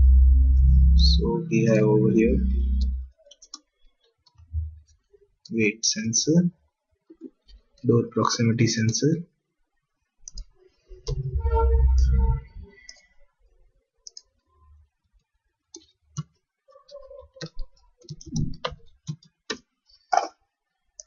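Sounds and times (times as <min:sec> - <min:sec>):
low-pitched hum: 0:00.0 - 0:03.1, 0:11.0 - 0:12.8
keyboard typing: 0:15.7 - 0:20.3.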